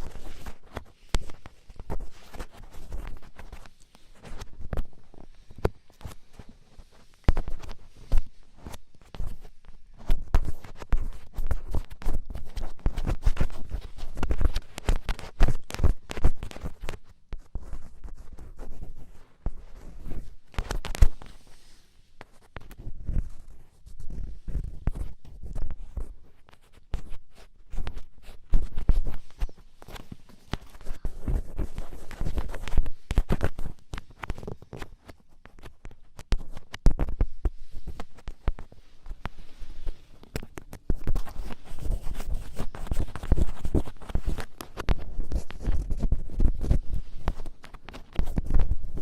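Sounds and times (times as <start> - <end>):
ear pick scratching in ear: 0.0 - 49.0.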